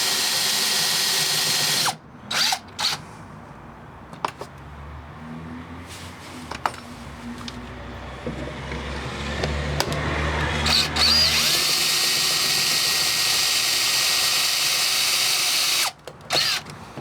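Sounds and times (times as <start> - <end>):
power drill drilling: 0.0 - 3.0, 9.8 - 16.7.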